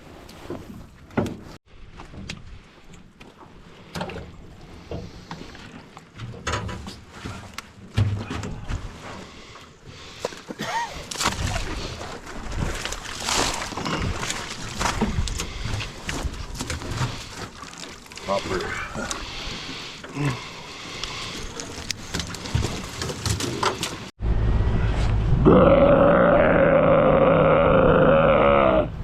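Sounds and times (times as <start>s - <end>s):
water sloshing: 8.8s - 24.1s.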